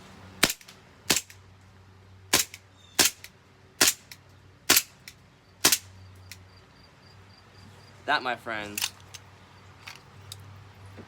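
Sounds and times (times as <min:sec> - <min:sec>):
airsoft pistol shots: 0:00.4 - 0:01.4, 0:02.3 - 0:05.0, 0:05.6 - 0:05.9.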